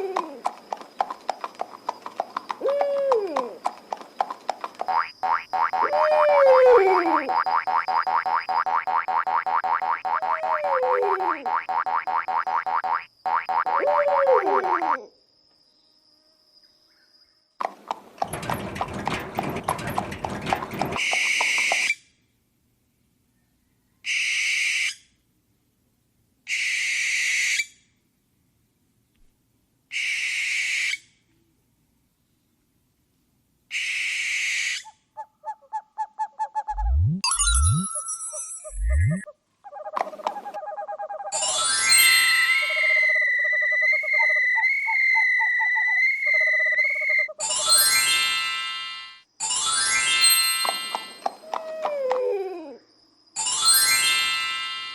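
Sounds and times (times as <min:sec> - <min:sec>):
owl screech: 0:02.6 - 0:03.6, 0:05.8 - 0:07.2, 0:24.0 - 0:25.0, 0:26.5 - 0:27.6, 0:29.9 - 0:31.0, 0:33.7 - 0:35.0, 0:42.0 - 0:47.3
dense clattering: 0:17.7 - 0:21.0
synthesized rising sweep: 0:36.7 - 0:39.2
high wavering synth tone: 0:36.7 - 0:39.3
rapid repeated low synth notes: 0:36.8 - 0:37.8.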